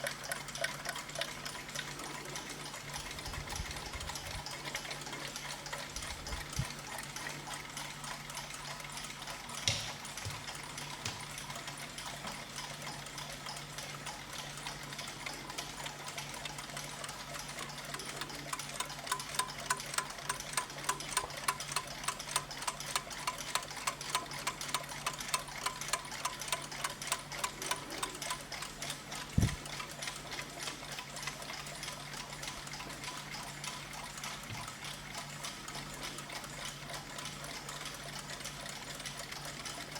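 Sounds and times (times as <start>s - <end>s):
mechanical clocks ticking: 0.0s - 39.9s
low steady hum: 13.1s - 30.3s.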